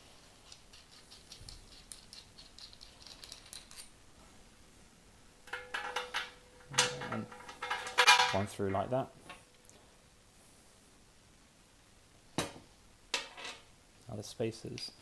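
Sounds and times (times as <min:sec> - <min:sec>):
small metal screws clicking: 0:00.4 - 0:04.0
ringing metallic clinks: 0:05.5 - 0:08.5.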